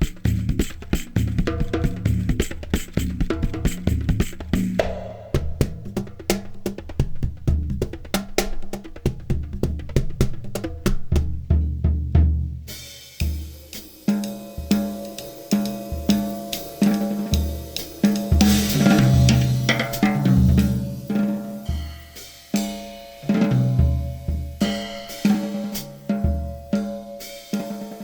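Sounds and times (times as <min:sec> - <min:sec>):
rapid drum and wood strikes: 0:00.0 - 0:12.7, 0:13.3 - 0:22.0
low drum hits: 0:03.1 - 0:06.3.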